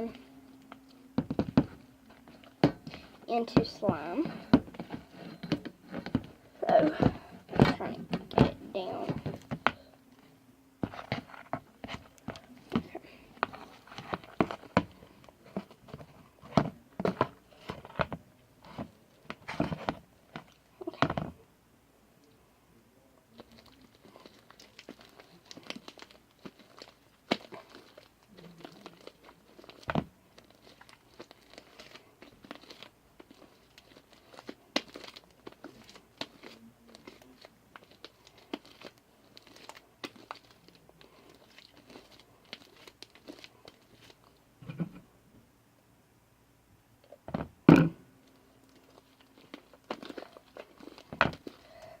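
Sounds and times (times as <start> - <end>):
slime squelching and crackling: 23.3 - 44.4, 48.2 - 52.0.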